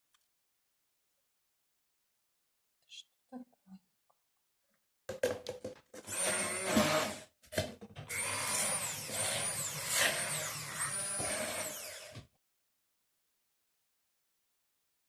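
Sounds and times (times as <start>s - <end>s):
electric blender motor whine: 6.0s - 7.3s, 8.1s - 12.3s.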